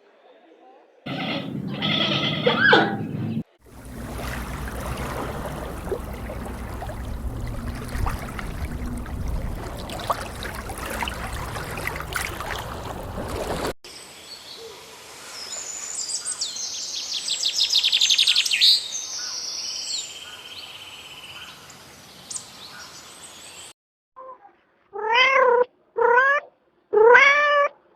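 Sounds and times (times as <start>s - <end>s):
rumbling background noise: 1.1s - 13.7s.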